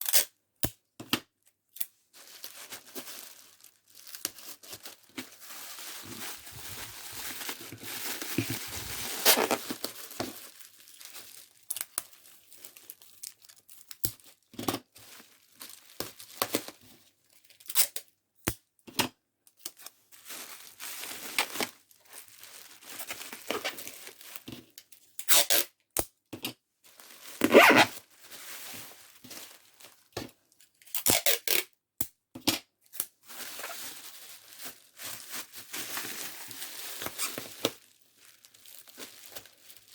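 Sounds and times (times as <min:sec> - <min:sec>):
wrapping material rustling: 0:02.1 - 0:16.8, 0:20.1 - 0:24.5, 0:26.8 - 0:30.1, 0:33.2 - 0:39.9
tearing noises: 0:06.0 - 0:10.3, 0:30.9 - 0:31.7.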